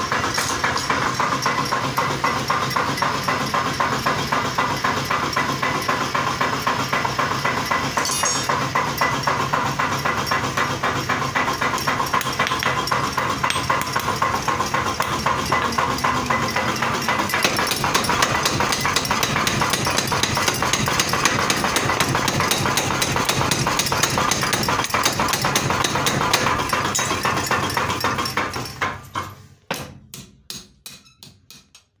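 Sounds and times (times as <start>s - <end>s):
power hammer striking: 0.0s - 31.9s.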